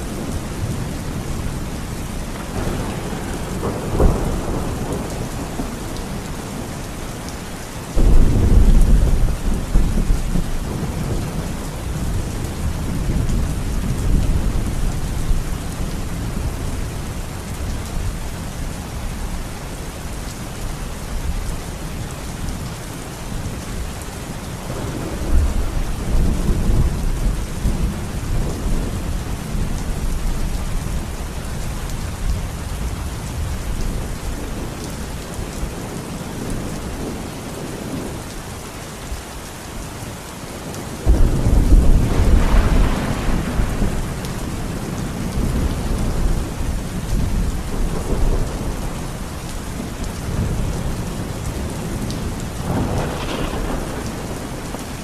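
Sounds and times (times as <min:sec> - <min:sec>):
low thunder rumble: 0:00.0 - 0:06.8, 0:08.0 - 0:18.5, 0:24.6 - 0:38.2, 0:41.0 - 0:55.0
steady rain: 0:00.0 - 0:55.0
thunderclap: 0:02.4 - 0:05.7, 0:08.0 - 0:12.0, 0:41.0 - 0:44.6, 0:51.8 - 0:55.0.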